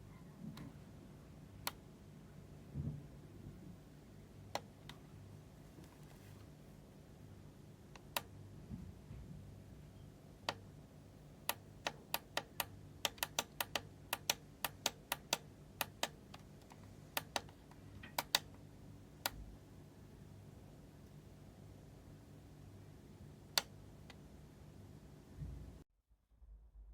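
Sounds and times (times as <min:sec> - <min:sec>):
sharp clicks: 0:08.0 - 0:08.3, 0:11.4 - 0:18.6.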